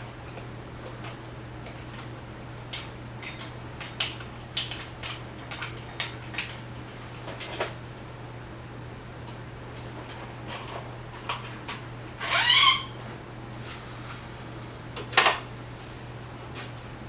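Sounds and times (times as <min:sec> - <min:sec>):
steady low hum: 0:00.0 - 0:12.2.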